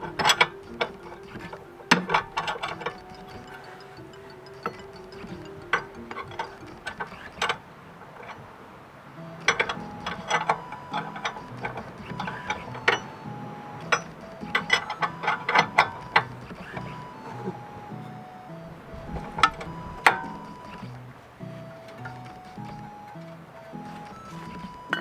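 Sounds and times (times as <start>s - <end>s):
ratchet clicking: 0.0s - 7.6s
quiet background music: 0.0s - 25.0s.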